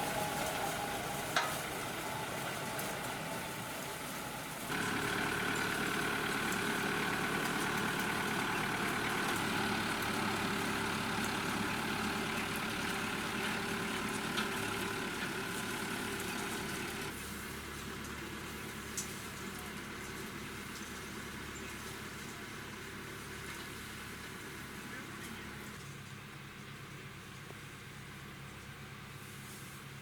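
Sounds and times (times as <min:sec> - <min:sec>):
motor humming: 0:04.7 - 0:17.1.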